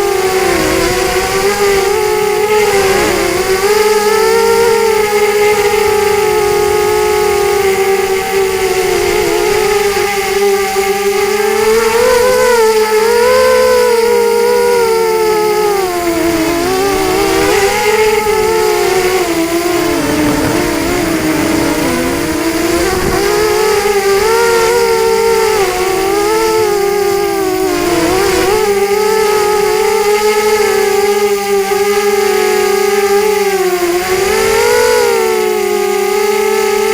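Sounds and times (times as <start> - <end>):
wind rumbling on microphone: 0.0 - 32.8
drone motors whining: 0.0 - 36.9.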